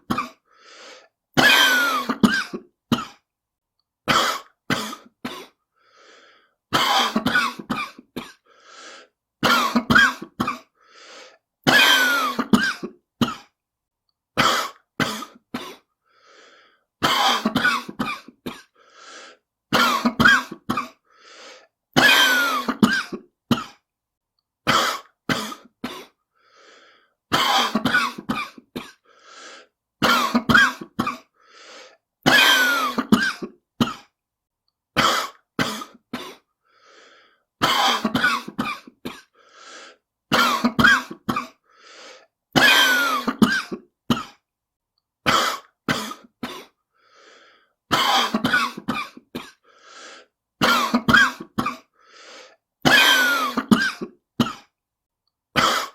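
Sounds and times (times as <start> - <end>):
person coughing: 0.0 - 0.5, 1.4 - 3.3, 4.1 - 5.6, 6.7 - 8.5, 9.4 - 10.8, 11.6 - 13.6, 14.4 - 15.9, 17.0 - 18.8, 19.7 - 21.0, 22.0 - 23.8, 24.6 - 26.2, 27.3 - 29.1, 30.0 - 31.3, 32.2 - 34.2, 35.0 - 36.5, 37.6 - 39.4, 40.3 - 41.6, 42.6 - 44.4, 45.2 - 46.8, 47.9 - 49.7, 50.6 - 52.0, 52.8 - 54.7, 55.6 - 55.9
person breathing: 0.4 - 1.2, 5.7 - 6.7, 8.4 - 9.2, 10.7 - 11.4, 16.0 - 17.0, 18.7 - 19.5, 21.0 - 21.8, 26.2 - 27.2, 29.0 - 29.8, 31.3 - 32.0, 36.6 - 37.5, 39.3 - 40.1, 41.6 - 42.3, 46.9 - 47.8, 49.6 - 50.4, 51.9 - 52.6.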